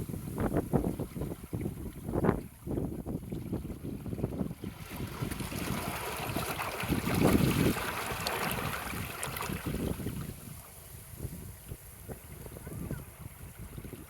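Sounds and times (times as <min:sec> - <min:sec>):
trickling water: 0:00.0 - 0:14.0
wind buffeting microphone: 0:00.0 - 0:14.0
small waves lapping over rocks: 0:00.4 - 0:14.0.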